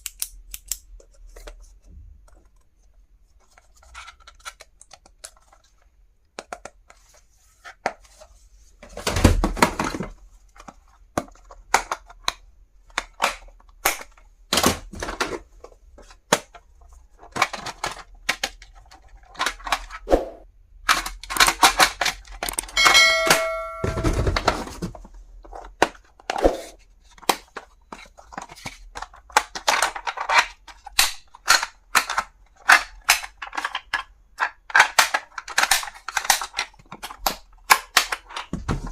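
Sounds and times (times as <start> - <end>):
brief ringing ding: 22.8 - 24.2.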